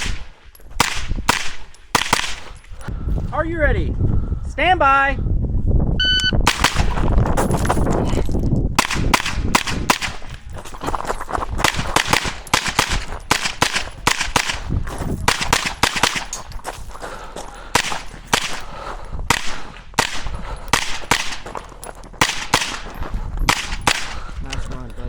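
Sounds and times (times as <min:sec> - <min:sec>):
carbine gunshots: 0:00.0 - 0:02.6, 0:06.4 - 0:07.1, 0:08.8 - 0:10.4, 0:11.6 - 0:16.5, 0:17.6 - 0:24.4
shot timer beep: 0:06.0 - 0:06.4.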